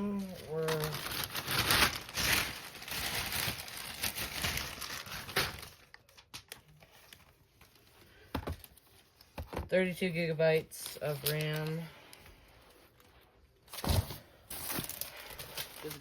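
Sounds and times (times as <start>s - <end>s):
packaging crinkling: 0.1s - 7.9s, 13.7s - 16.0s.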